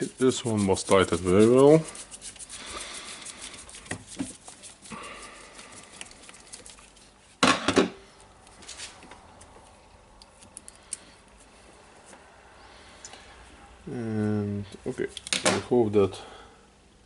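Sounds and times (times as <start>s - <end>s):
brief rub: 0.0s - 7.4s
light clicks and taps of tools: 8.2s - 11.4s.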